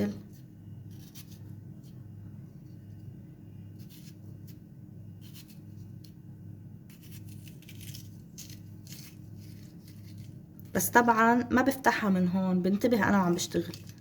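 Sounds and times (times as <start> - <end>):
steady low hum: 0.0 - 14.0
metal corer scraping radish: 6.9 - 10.8.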